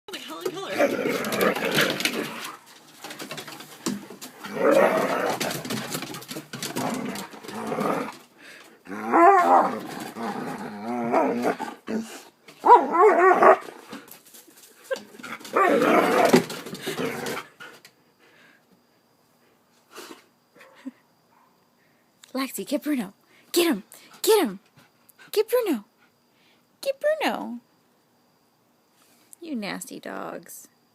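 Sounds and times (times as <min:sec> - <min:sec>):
dog growling: 0:00.7 - 0:02.6, 0:04.4 - 0:06.0, 0:06.6 - 0:08.2, 0:08.8 - 0:13.9, 0:15.2 - 0:17.5.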